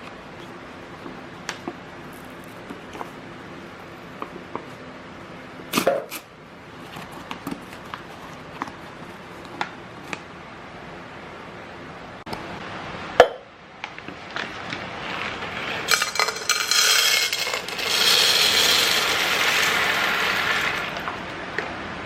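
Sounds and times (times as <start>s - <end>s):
faint steady hum: 0.0s - 22.0s.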